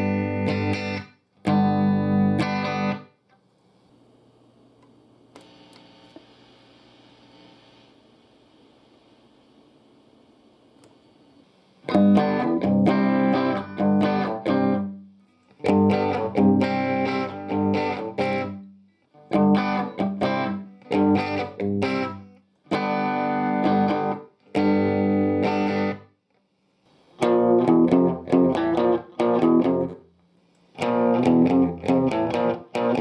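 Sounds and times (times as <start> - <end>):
electric guitar strummed and picked: 0.0 - 3.1, 11.9 - 26.1, 27.2 - 30.0, 30.8 - 33.0.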